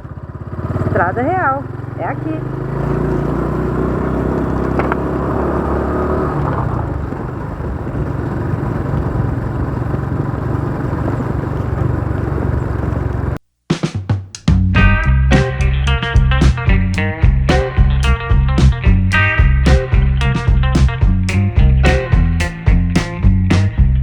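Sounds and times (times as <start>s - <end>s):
road noise: 0.0s - 13.4s, 14.5s - 24.0s
vehicle engine drone: 0.0s - 13.4s, 14.8s - 24.0s
plucked guitar music: 14.6s - 24.0s.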